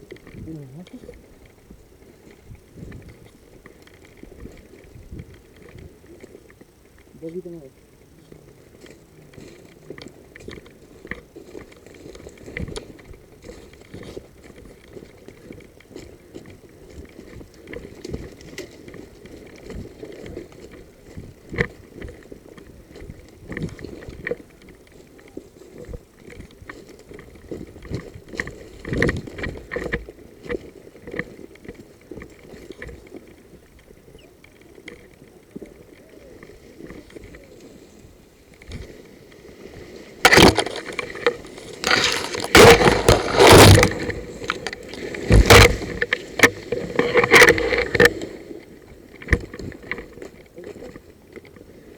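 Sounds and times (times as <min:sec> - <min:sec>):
footsteps crunching through dry brush: 0:40.3 - 0:47.8.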